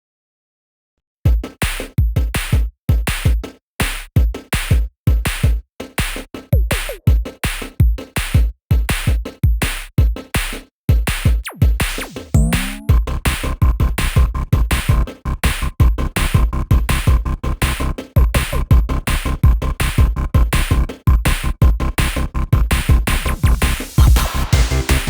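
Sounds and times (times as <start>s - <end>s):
electronic music with heavy bass: 5.4s - 25.0s.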